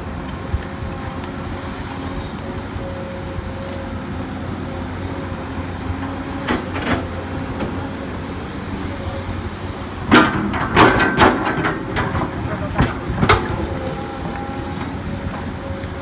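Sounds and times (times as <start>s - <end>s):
excavator diesel engine running: 0.0s - 16.0s
clanks and knocks: 10.0s - 15.4s.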